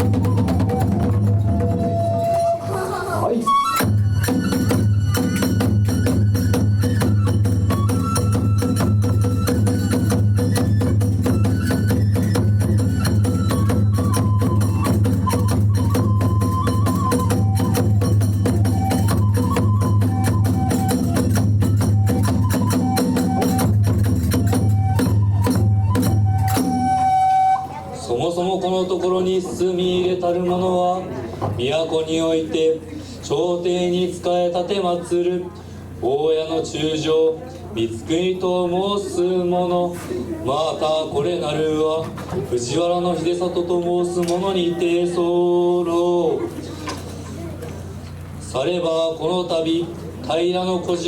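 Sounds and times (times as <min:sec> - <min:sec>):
fast steady drumming: 0:00.0 - 0:02.2, 0:03.8 - 0:27.0
transverse flute melody: 0:00.0 - 0:28.1.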